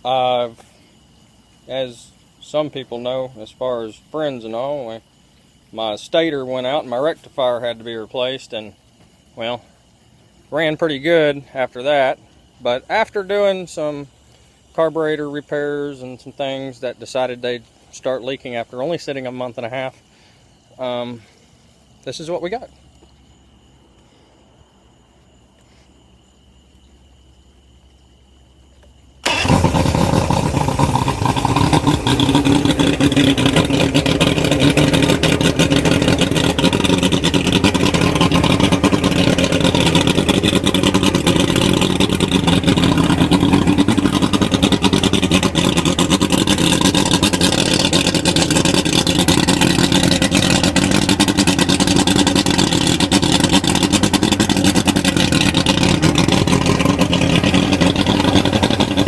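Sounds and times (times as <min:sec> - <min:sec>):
outboard motor running: 0:29.2 - 0:59.0.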